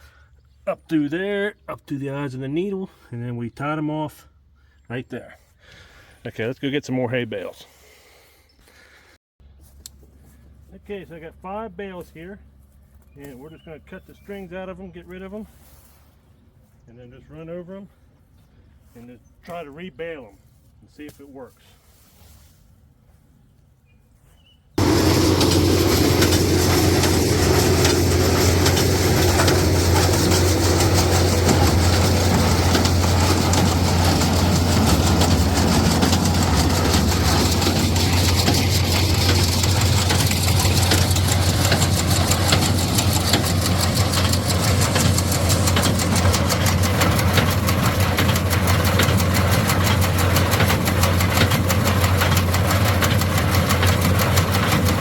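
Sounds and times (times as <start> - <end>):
baler clattering: 24.8 - 55.0
tractor engine drone: 24.8 - 55.0.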